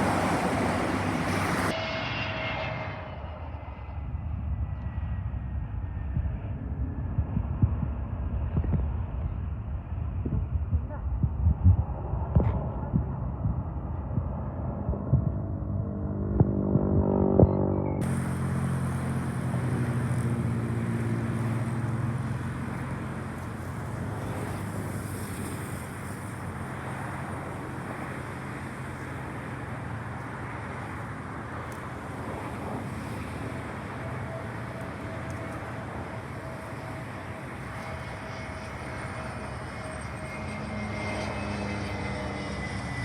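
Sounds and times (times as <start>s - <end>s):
jet engines roaring: 0.0s - 43.0s.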